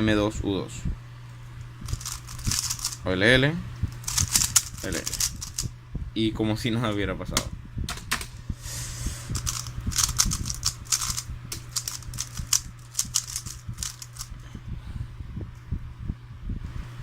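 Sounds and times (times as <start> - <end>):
steady low hum: 0.0 - 17.0
puzzle cube plastic clicks: 1.9 - 3.0, 4.0 - 5.7, 9.3 - 14.3.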